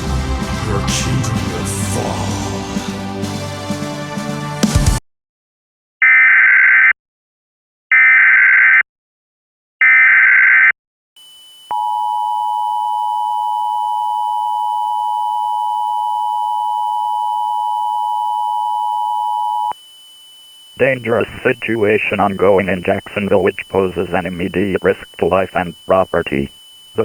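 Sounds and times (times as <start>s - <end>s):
warbling digital data tones: 19.6s - 27.0s
two-tone attention signal: 20.8s - 27.0s.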